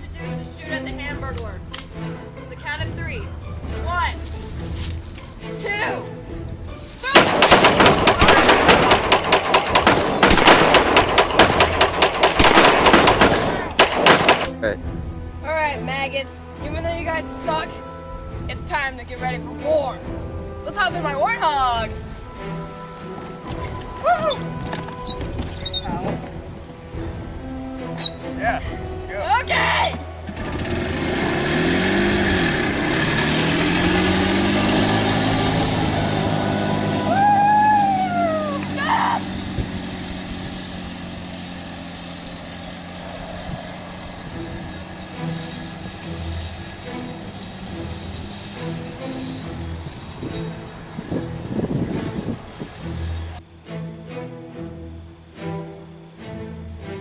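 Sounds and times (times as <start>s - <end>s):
vehicle engine running: 0.0s - 57.0s
rapid automatic gunfire: 7.2s - 14.5s.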